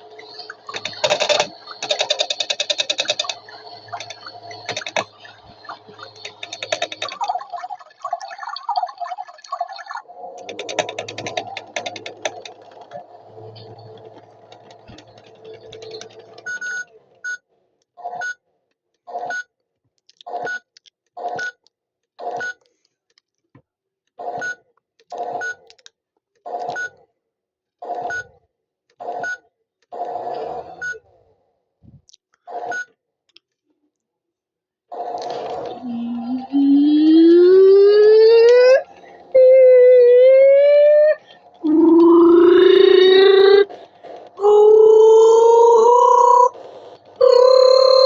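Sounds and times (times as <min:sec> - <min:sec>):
toy washing machine motor hum: 0:00.0 - 0:16.8, 0:41.6 - 0:48.0.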